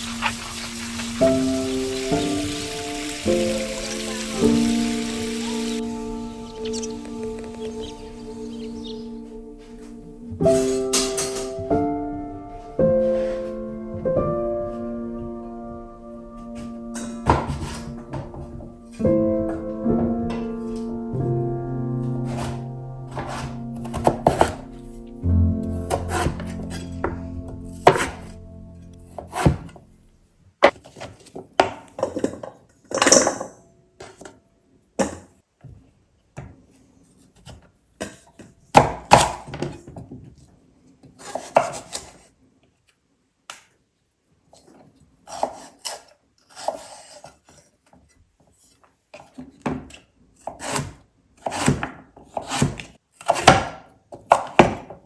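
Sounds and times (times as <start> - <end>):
soft music: 0.0 - 30.3.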